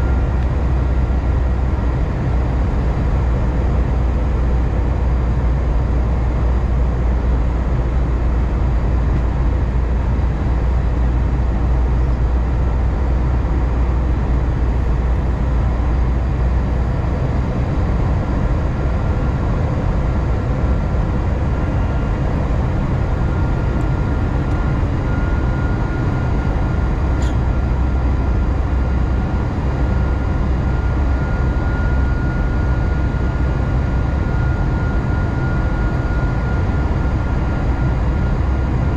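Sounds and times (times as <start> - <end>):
aircraft cabin engine rumble: 0.0 - 38.9
brief click: 27.2 - 27.4.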